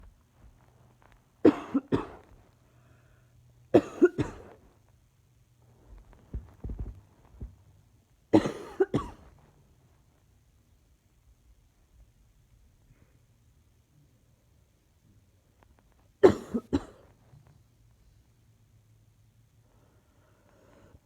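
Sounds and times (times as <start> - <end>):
woman coughing: 1.5 - 2.2, 3.8 - 4.6, 8.4 - 9.2, 16.2 - 17.0
soft low thumps: 5.9 - 7.8.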